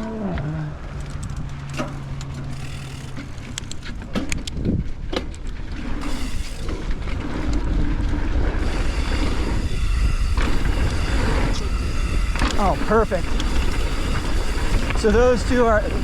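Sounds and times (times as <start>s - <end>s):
bike tyre noise: 0.0s - 16.0s
bike rattling over jump: 0.8s - 16.0s
wind rushing over microphone: 3.3s - 16.0s.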